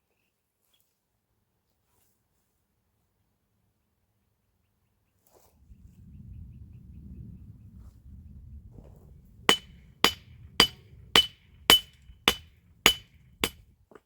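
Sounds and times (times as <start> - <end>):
hammer blows with metallic ring: 9.5 - 13.6.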